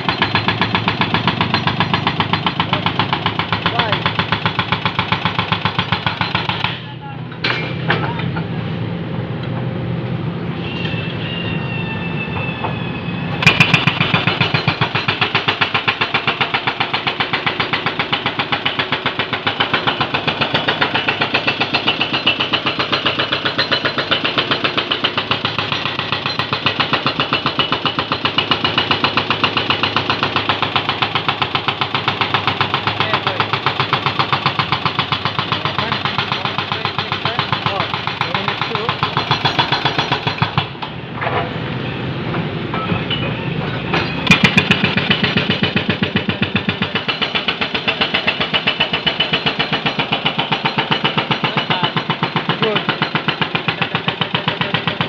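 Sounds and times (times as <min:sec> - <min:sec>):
hydraulic breaker hammering road: 0:00.0 - 0:08.6, 0:13.4 - 0:55.0
diesel engine running: 0:40.6 - 0:55.0.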